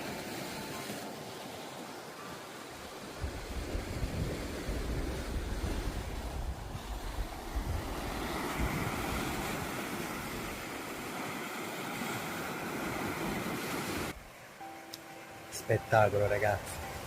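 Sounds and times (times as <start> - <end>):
surf on a rocky shore: 0.0 - 17.0
wind buffeting the microphone: 3.1 - 11.1.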